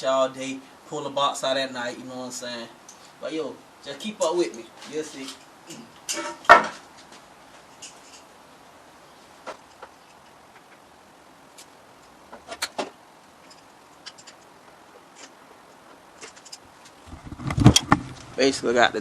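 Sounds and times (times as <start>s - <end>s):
tools and parts clicking: 13.4s - 14.5s.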